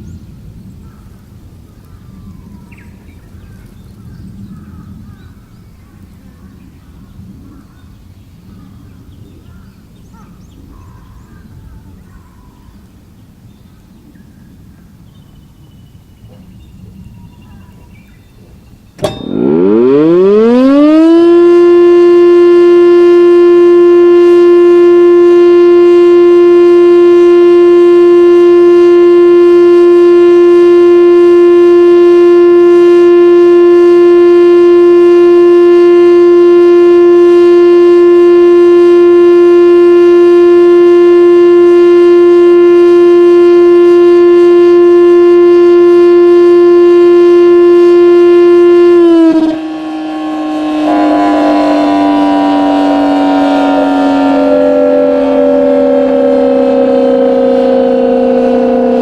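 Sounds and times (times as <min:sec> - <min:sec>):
siren over loudspeakers: 0:16.2 - 0:59.0.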